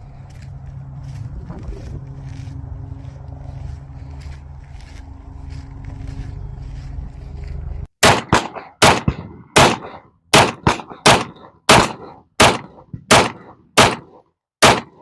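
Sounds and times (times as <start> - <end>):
low steady rumble: 0.0 - 13.6
gunshots with echo: 8.0 - 15.0.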